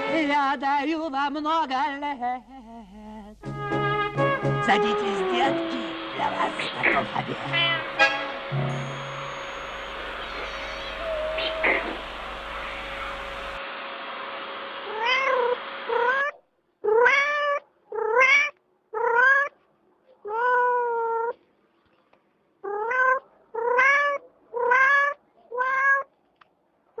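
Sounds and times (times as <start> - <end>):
steady hiss: 1.9 - 16.2
cat meowing: 7.4 - 8.0, 9.5 - 13.6, 14.9 - 19.6, 20.2 - 21.4, 22.6 - 26.2.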